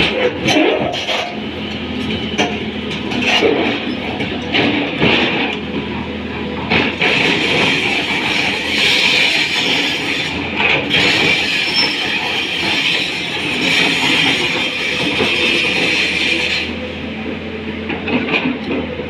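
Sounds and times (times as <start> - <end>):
excavator machine noise: 0.0 - 19.0.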